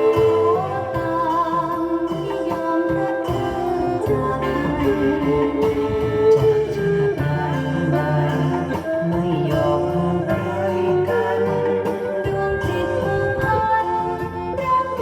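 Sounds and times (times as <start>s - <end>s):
bowed fiddle melody: 0.0s - 15.0s.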